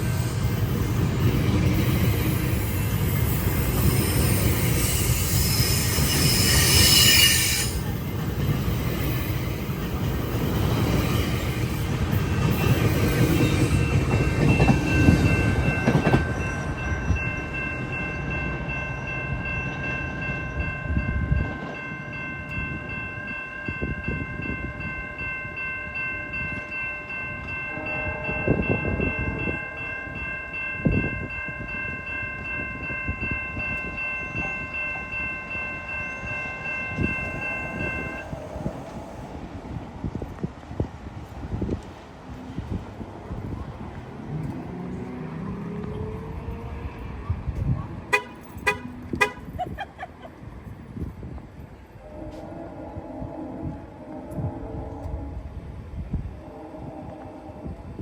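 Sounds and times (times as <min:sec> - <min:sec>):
train wheels rumbling on rails: 0:00.0 - 0:52.8.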